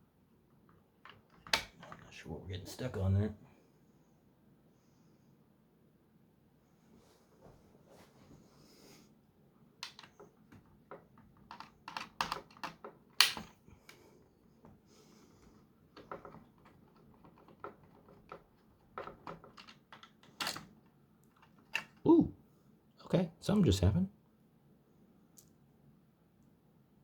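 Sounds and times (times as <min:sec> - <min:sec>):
plastic clicks and clacks: 0:00.7 - 0:02.1, 0:09.8 - 0:14.0, 0:16.0 - 0:22.0.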